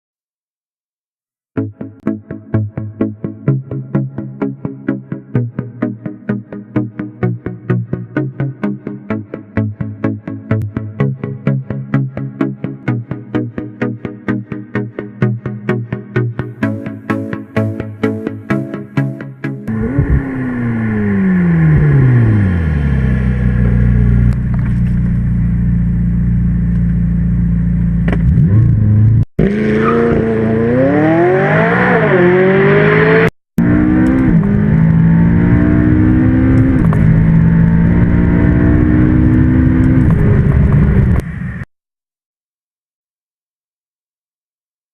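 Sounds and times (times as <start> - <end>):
car engine accelerating: 19.7 - 41.7.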